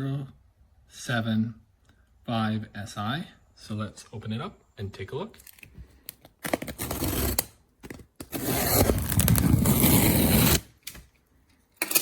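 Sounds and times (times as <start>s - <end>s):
packaging rustling: 7.9s - 10.2s.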